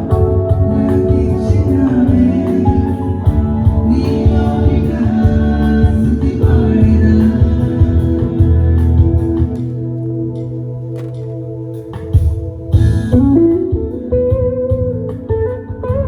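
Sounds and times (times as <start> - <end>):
man singing: 0.0 - 9.4
steady drum beat: 0.0 - 9.8, 12.0 - 15.2
electric guitar: 0.0 - 16.0
keyboard: 0.0 - 16.0.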